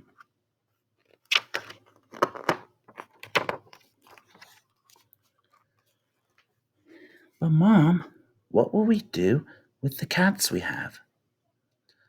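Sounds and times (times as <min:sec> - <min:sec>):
book page turning: 0:01.0 - 0:06.6.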